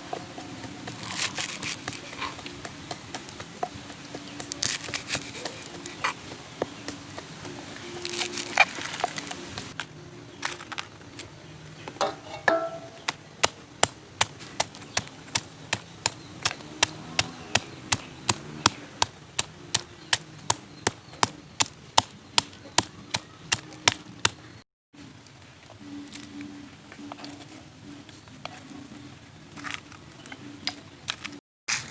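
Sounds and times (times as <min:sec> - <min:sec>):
rhythmic knocking of food preparation: 0:00.0 - 0:09.8, 0:12.0 - 0:24.6.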